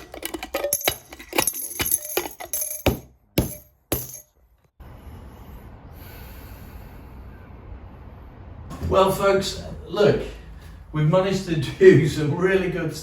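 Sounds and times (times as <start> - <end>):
coins clinking into glass jar: 0.0 - 4.3.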